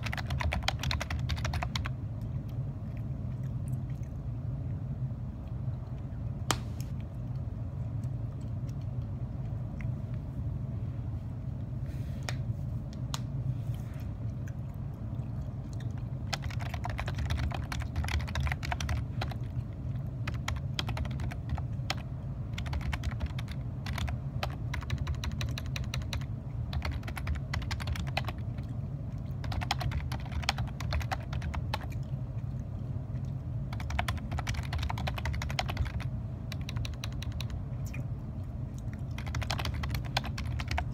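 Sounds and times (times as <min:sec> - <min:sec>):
typing on keyboard: 0:00.0 - 0:01.9, 0:16.2 - 0:19.5, 0:20.2 - 0:28.7, 0:29.3 - 0:32.0, 0:33.7 - 0:37.6, 0:39.0 - 0:40.9
low background hum: 0:00.0 - 0:40.9.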